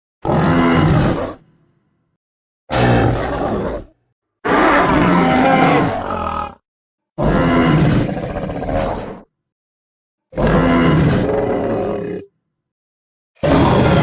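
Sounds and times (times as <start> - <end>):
deep dinosaur calls: 2.7 - 4.0.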